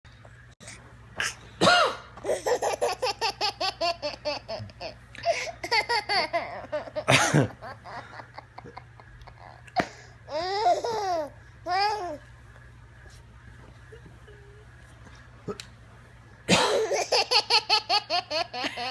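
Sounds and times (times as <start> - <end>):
man coughing: 1.6 - 2.1, 7.1 - 7.6, 16.5 - 17.0
baby laughing: 2.2 - 12.2.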